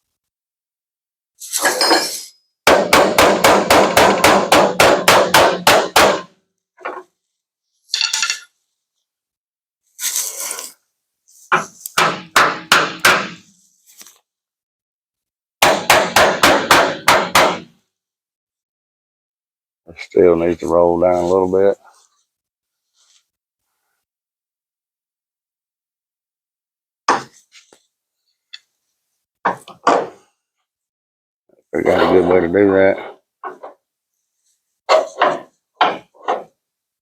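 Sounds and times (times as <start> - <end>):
hammer beating on steel panel: 2.6 - 6.3, 12.0 - 13.4, 15.6 - 17.7.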